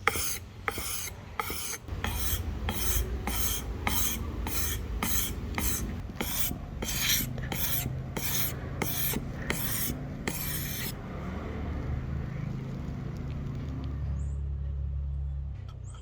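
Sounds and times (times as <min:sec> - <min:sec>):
hand file scraping wood: 0:00.0 - 0:11.0.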